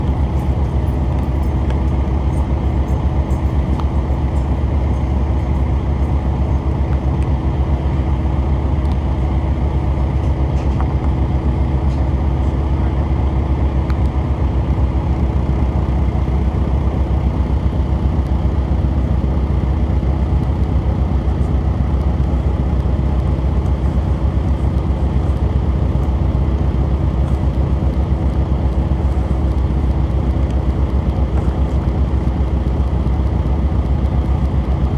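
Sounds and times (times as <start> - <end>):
diesel railcar engine rumble: 0.0 - 34.9.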